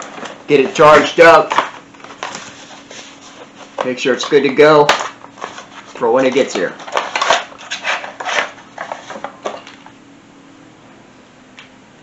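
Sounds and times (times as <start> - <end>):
faint steady hum: 0.0 - 12.0
rubbing and rustling scrapes: 2.0 - 4.4, 5.3 - 9.4.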